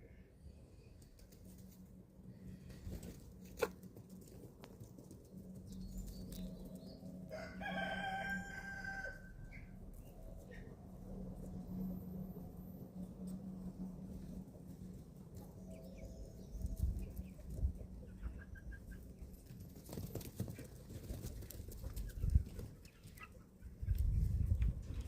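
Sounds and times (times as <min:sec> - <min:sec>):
chickens pecking: 0:02.7 - 0:06.9, 0:16.8 - 0:25.0
chicks peeping: 0:14.8 - 0:19.6, 0:20.5 - 0:25.0.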